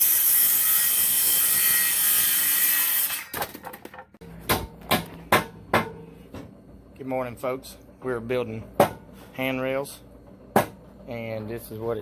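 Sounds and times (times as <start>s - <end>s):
power tool cutting wood: 0.0s - 3.5s.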